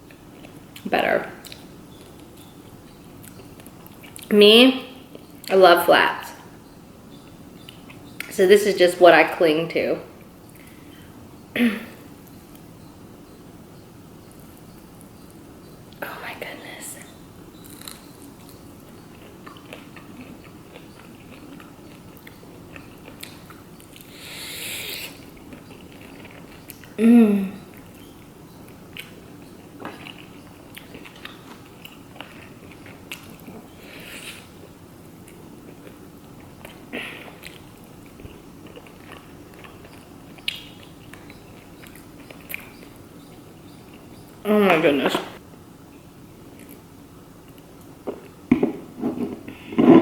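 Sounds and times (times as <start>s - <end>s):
food crunch: 17.6s - 24.1s
chewing fried chicken: 17.6s - 27.0s, 27.6s - 44.4s
hiss: 24.1s - 25.2s, 33.8s - 34.5s
mouth clicks and smacks: 35.2s - 44.4s
wet mouth clicks: 38.8s - 42.8s.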